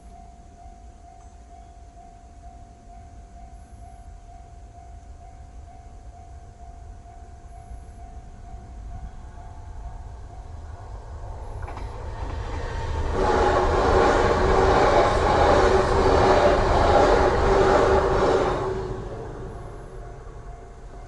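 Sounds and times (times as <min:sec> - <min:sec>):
train rushing over rails: 0:08.0 - 0:21.0.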